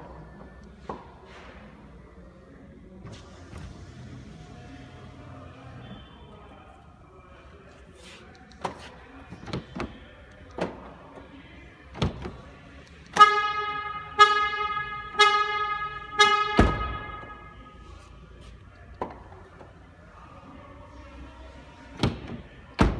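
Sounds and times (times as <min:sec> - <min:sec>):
car horn honks: 0:13.1 - 0:18.0.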